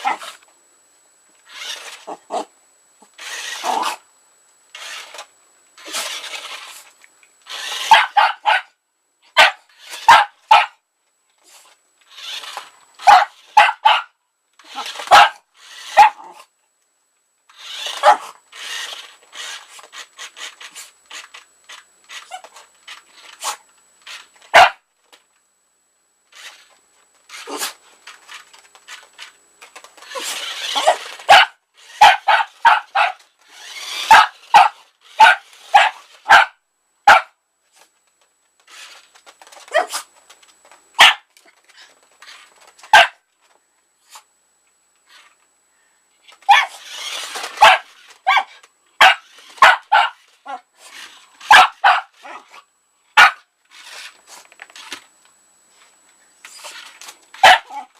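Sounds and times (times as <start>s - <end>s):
small dog yapping: 0.0s - 0.4s, 3.3s - 4.0s, 7.6s - 8.7s, 9.4s - 10.8s, 12.2s - 14.1s, 14.7s - 16.4s, 17.8s - 18.3s, 24.5s - 24.8s, 30.1s - 37.3s, 39.7s - 40.1s, 41.0s - 41.3s, 42.9s - 43.2s, 46.4s - 50.6s, 51.5s - 52.6s, 53.2s - 53.4s, 57.4s - 57.9s.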